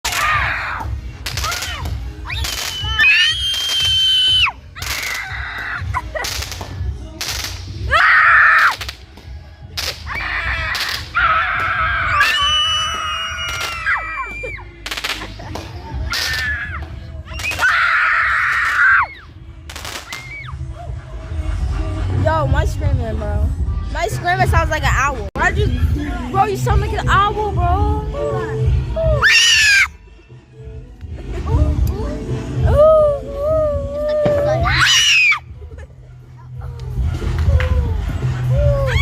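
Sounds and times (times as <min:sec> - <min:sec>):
fireworks bangs and crackles: 0:00.0 - 0:05.2, 0:05.8 - 0:07.9, 0:08.6 - 0:13.9, 0:14.8 - 0:17.7, 0:19.6 - 0:20.4
fireworks whistling: 0:01.2 - 0:05.2, 0:06.2 - 0:07.7, 0:12.2 - 0:13.9, 0:17.4 - 0:17.7.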